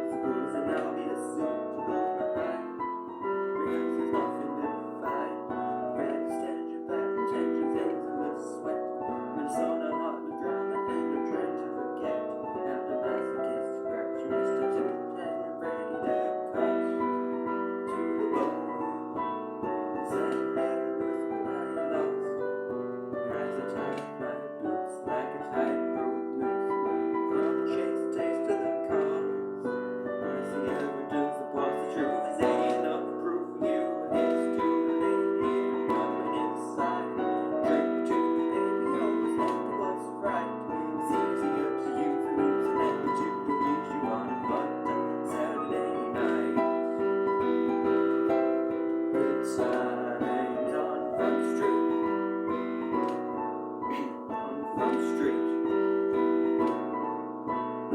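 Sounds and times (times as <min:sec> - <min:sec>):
piano playing: 0:00.0 - 0:57.9.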